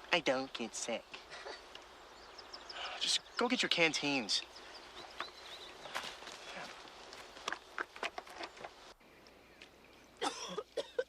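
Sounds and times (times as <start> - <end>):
faint outdoor ambience: 0.0 - 11.0
footsteps: 5.0 - 8.8.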